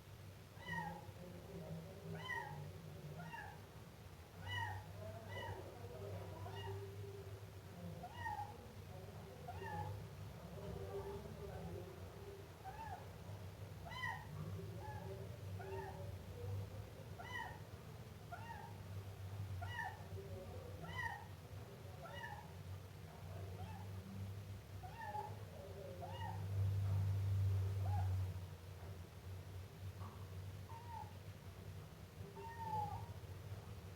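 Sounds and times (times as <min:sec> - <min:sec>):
kitten meowing: 0:32.4 - 0:33.1.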